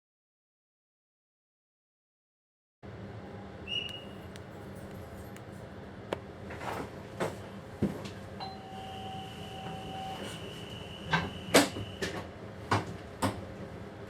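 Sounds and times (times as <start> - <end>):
two-tone signal beep: 8.4 - 10.4.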